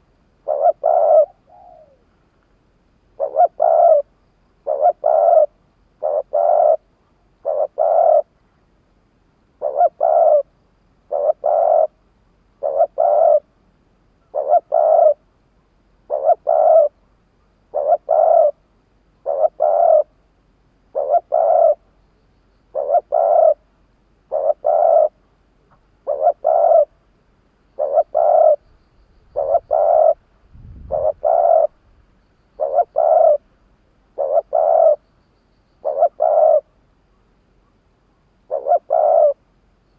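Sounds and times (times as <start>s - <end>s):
dove cooing: 0.0s - 2.1s, 3.2s - 8.4s, 9.6s - 12.0s, 12.6s - 13.5s, 14.2s - 15.3s, 16.0s - 17.0s, 17.7s - 20.2s, 20.9s - 21.8s, 22.7s - 23.7s, 24.3s - 25.2s, 26.0s - 27.0s, 27.7s - 28.6s, 29.3s - 30.2s, 30.8s - 31.8s, 32.6s - 33.4s, 34.1s - 35.0s, 35.8s - 36.7s, 38.5s - 39.4s.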